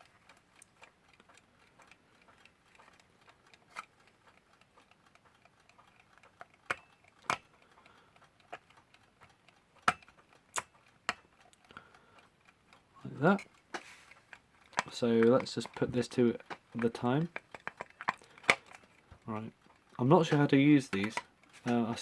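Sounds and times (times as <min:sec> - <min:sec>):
clock ticking faintly: 0:00.0 - 0:22.0
small parts clicking: 0:00.0 - 0:22.0.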